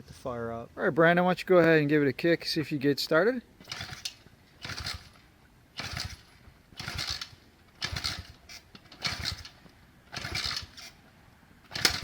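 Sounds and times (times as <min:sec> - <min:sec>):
motorcycle being kick-started: 0:03.6 - 0:05.2, 0:05.8 - 0:11.0, 0:11.6 - 0:12.0
engine turning over: 0:03.6 - 0:11.0, 0:11.6 - 0:12.0.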